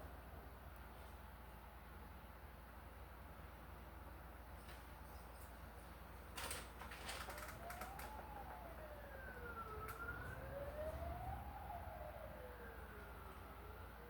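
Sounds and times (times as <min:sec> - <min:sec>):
faint siren wailing: 0:06.8 - 0:14.0.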